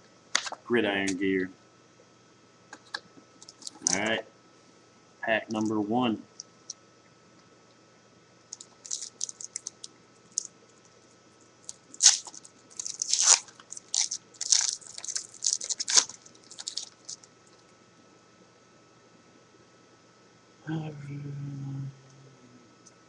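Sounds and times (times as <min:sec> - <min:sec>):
cards rustling: 0:02.8 - 0:04.1, 0:08.5 - 0:10.5, 0:11.6 - 0:17.3
wrapper tearing and crinkling: 0:08.5 - 0:10.5, 0:11.6 - 0:17.3.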